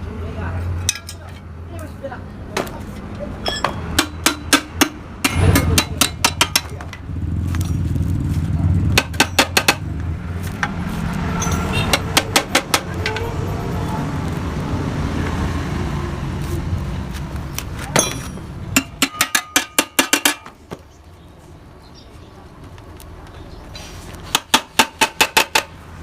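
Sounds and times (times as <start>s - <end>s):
sharp metal taps: 3.4s - 7.9s, 8.9s - 9.9s, 11.4s - 13.2s, 17.9s - 20.6s, 24.3s - 25.8s.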